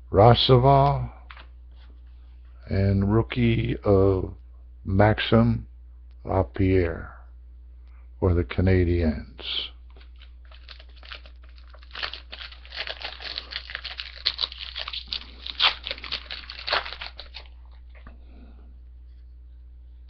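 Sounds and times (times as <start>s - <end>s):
wrapper tearing and crinkling: 9.9s - 18.1s.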